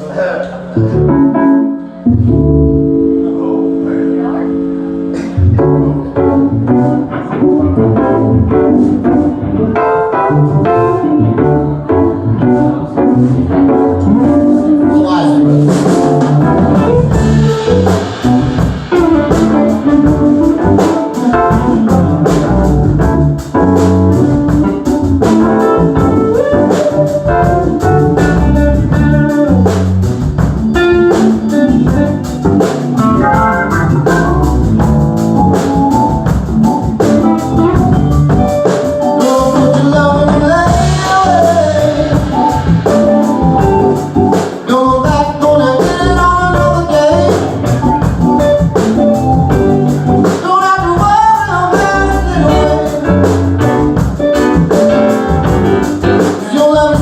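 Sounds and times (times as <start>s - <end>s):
blues-rock band playing: 0.5s - 57.0s
drums: 5.0s - 57.0s.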